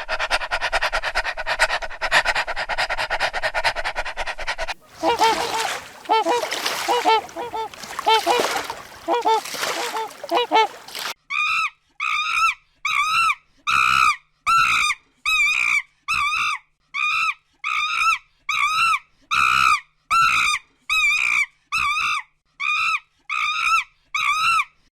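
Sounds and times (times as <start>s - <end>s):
animal high-pitched calls: 4.9s - 11.1s.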